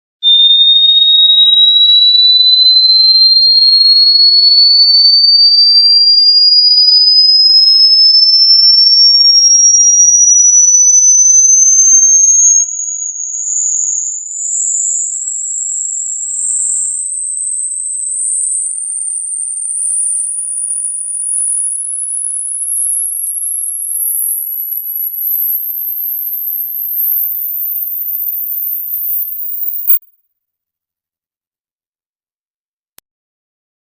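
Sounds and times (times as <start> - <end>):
pure electronic tone sweep: 5.4 - 30.0.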